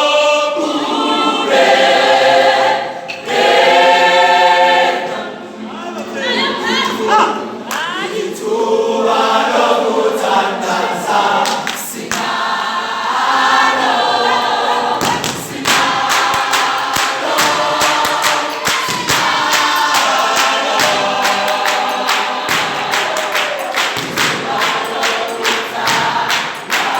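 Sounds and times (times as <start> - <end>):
choir singing: 0.0 - 26.9
sharp percussive beats: 15.0 - 26.9.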